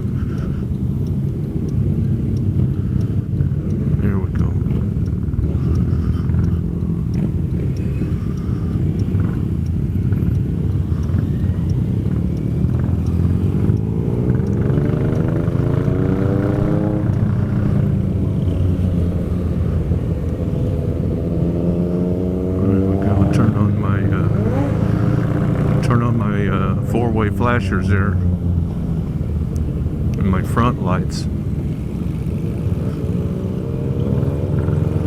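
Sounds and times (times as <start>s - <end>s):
motorcycle engine accelerating: 0.0s - 35.0s
motorcycle engines running: 0.0s - 35.0s
wind and road noise: 0.0s - 35.0s.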